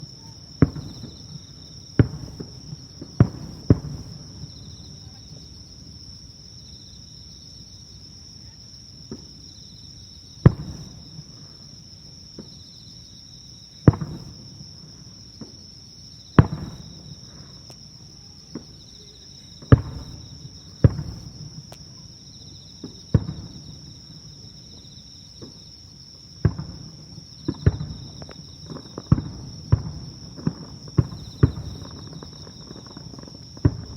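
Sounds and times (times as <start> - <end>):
faint fireworks pops: 0.0 - 5.8, 9.0 - 9.6, 10.4 - 11.7, 12.3 - 12.7, 13.8 - 15.7, 16.4 - 25.7, 26.4 - 33.9
distant fireworks booming: 0.0 - 6.1, 9.0 - 9.5, 10.4 - 11.7, 13.8 - 15.7, 16.3 - 25.7, 26.3 - 33.9.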